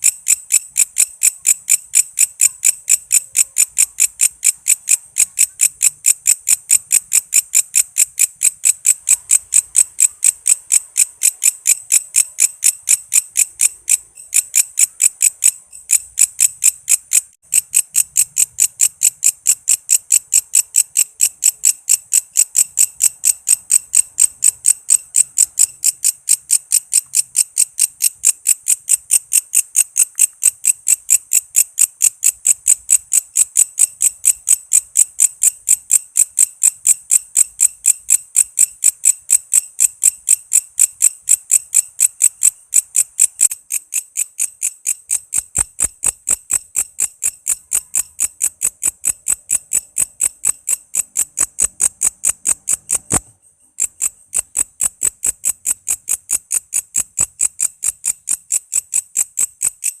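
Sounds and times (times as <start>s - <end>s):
insect calling in shrill pulses: 0.0s - 60.0s.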